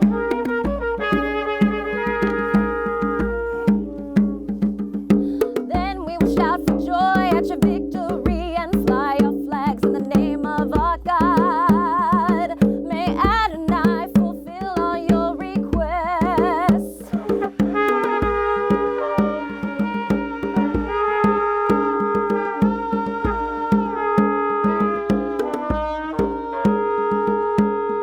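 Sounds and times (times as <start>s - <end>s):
steady percussion beat: 0.0s - 27.9s
wordless voice singing with vibrato: 5.7s - 17.6s.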